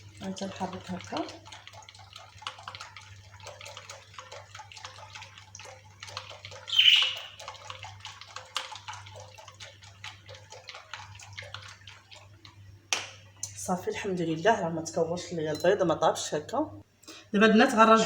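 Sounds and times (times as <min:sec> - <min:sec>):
wet sloshing: 0:00.0 - 0:13.4
low electrical hum: 0:00.0 - 0:18.0.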